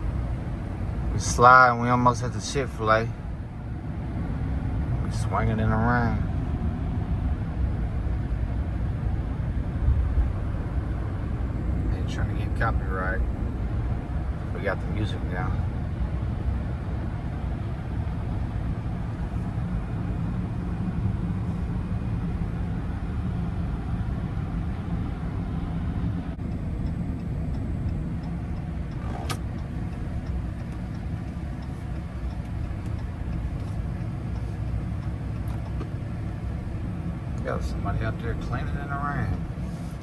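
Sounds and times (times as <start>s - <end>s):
engine low rumble: 0.0s - 40.0s
tyres on wet road: 0.0s - 40.0s
faint ticking: 26.3s - 37.5s.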